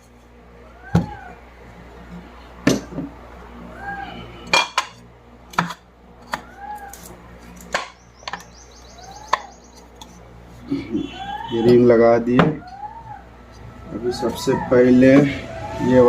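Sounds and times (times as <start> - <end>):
faint rising and falling chirp: 6.4 - 16.0.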